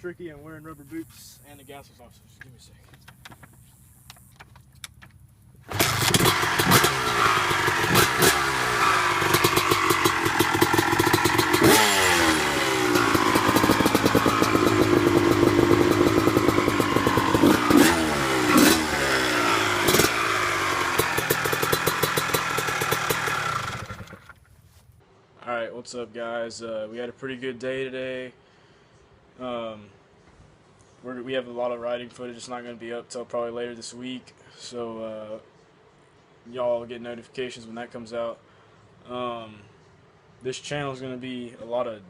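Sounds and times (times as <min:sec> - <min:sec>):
dirt bike engine revving: 0:05.7 - 0:24.4.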